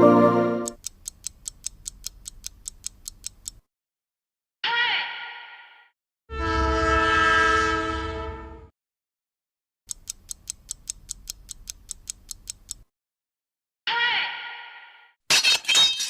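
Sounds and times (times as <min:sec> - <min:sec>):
train horn chord: 0:00.0 - 0:00.8.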